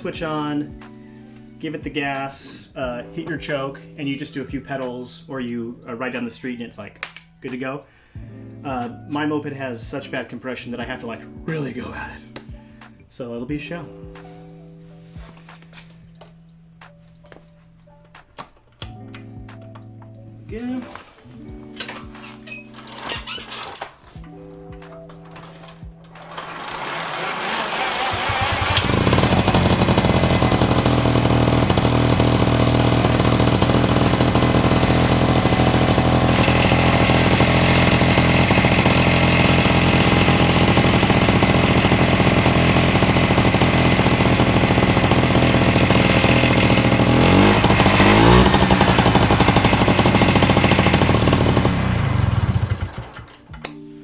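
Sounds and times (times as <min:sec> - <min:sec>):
moped engine running loud: 0:26.2 - 0:53.3.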